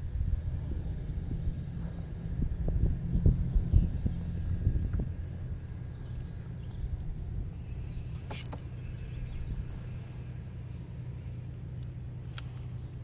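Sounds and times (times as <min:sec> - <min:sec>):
boat motors humming: 0:00.0 - 0:13.0.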